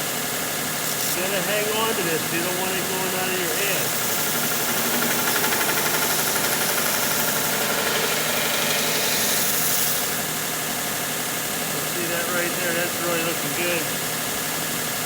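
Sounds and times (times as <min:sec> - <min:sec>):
belt sander grinding metal: 0:00.8 - 0:10.3.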